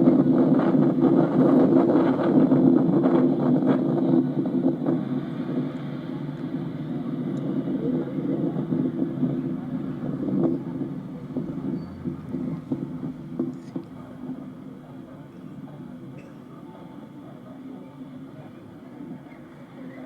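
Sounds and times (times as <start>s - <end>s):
bus engine running: 0.2s - 15.2s.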